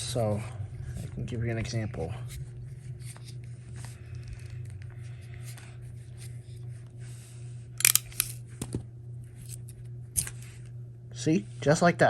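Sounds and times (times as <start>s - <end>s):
steady low hum: 0.0s - 12.0s
sharp tool clicks: 7.8s - 8.4s.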